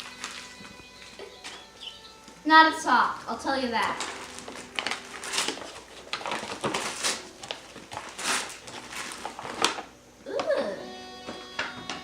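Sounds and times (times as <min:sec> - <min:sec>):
wrapping paper crinkling and tearing: 0:00.0 - 0:01.7, 0:03.8 - 0:09.9.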